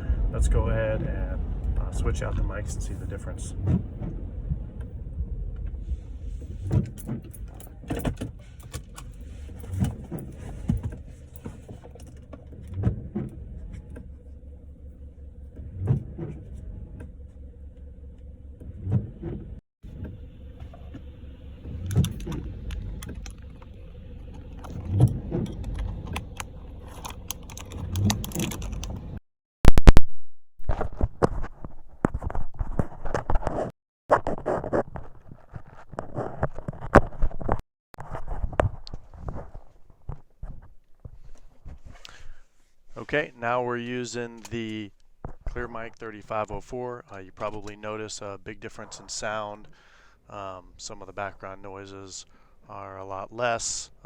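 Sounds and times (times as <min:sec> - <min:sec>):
engine and road rumble: 0:00.0 - 0:29.2, 0:32.1 - 0:54.0
windshield wipers knocking: 0:03.5 - 0:05.8, 0:06.4 - 0:14.2, 0:18.6 - 0:26.6.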